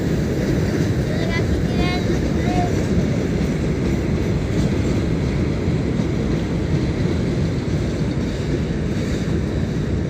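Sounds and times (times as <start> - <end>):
train rumbling past: 0.0 - 10.0.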